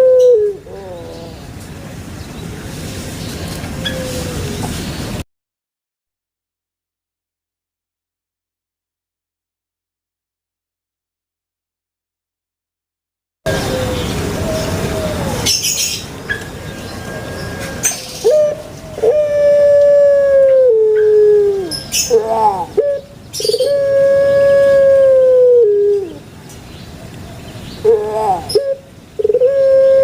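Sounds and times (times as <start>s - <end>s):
dove cooing: 0.0s - 1.5s, 3.7s - 4.6s, 13.5s - 15.9s, 17.2s - 26.3s, 27.8s - 30.0s.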